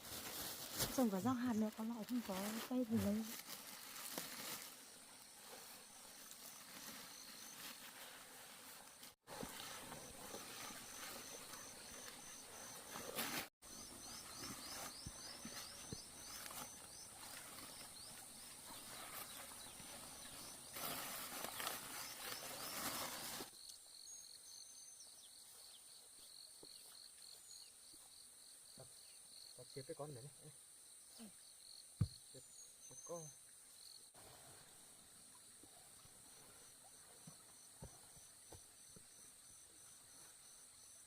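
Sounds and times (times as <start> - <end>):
rustling noise: 0.0 - 23.5
low slow insect trill: 9.4 - 41.0
insects chirping in high trills: 9.6 - 41.0.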